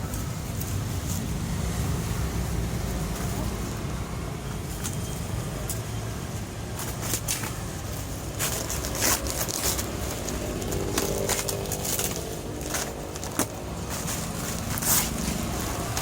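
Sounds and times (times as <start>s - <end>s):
plastic packaging crackling: 5.7s - 16.0s.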